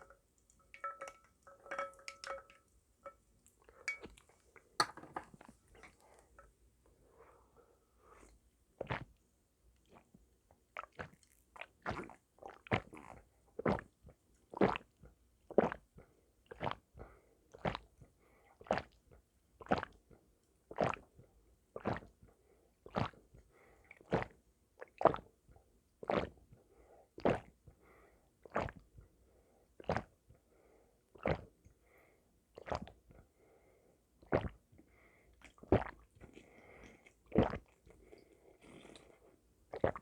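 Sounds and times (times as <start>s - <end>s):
person gulping a drink: 4.8s - 6.3s, 34.2s - 34.6s, 35.4s - 40.0s.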